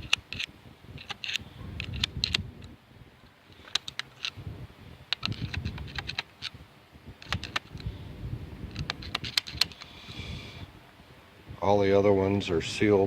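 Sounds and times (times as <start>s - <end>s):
screwdriver clicking on metal: 0.0s - 2.7s, 3.5s - 4.4s, 5.1s - 6.6s, 7.2s - 7.9s, 8.7s - 9.9s.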